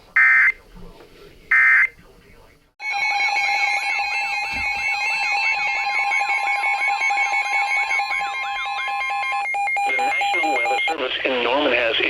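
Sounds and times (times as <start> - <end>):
steady attention tone: 2.8 - 11.0
warbling alarm: 2.8 - 11.0.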